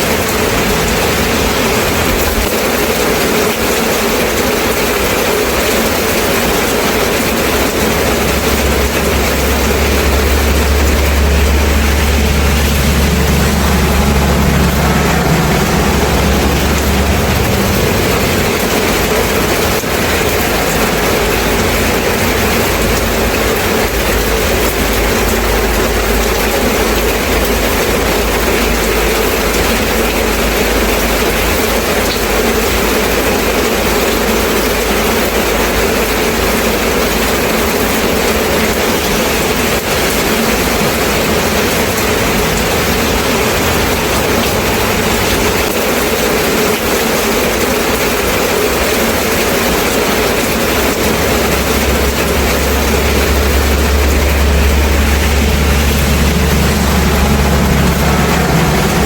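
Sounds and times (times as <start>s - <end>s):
steady rain falling: 0.0s - 59.0s
low rumble: 6.1s - 32.1s, 49.8s - 59.0s.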